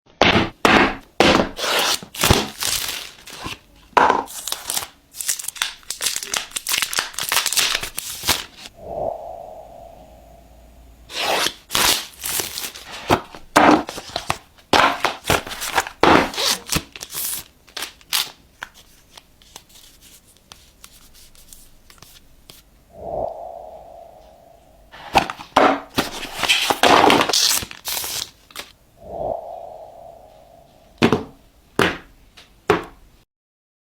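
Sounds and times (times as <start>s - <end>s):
plastic wrap tearing and crinkling: 1.6s - 3.6s, 4.2s - 8.7s, 11.1s - 20.1s, 26.0s - 28.8s.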